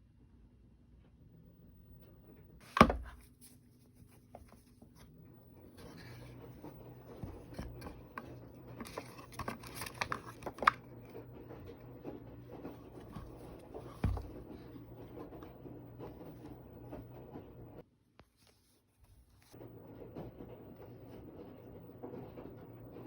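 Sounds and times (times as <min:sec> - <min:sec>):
paper and plastic crinkling: 0:07.1 - 0:11.3.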